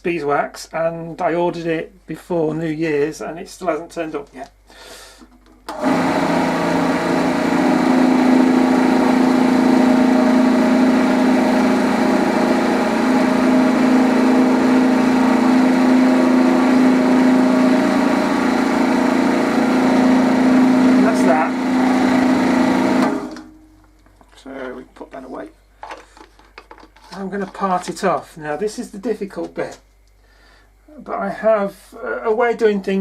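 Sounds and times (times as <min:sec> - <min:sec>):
wood lathe motor humming: 0:05.7 - 0:23.5.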